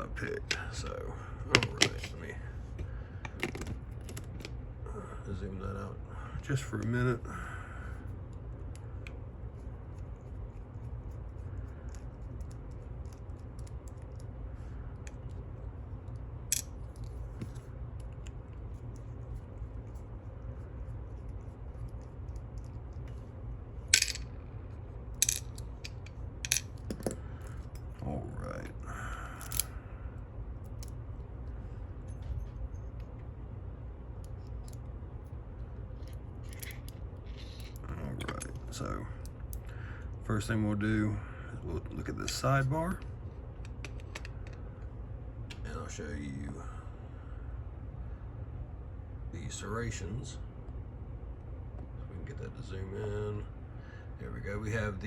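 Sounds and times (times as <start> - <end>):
low hum: 0.0 - 55.0
small lock parts clicking: 29.4 - 29.7.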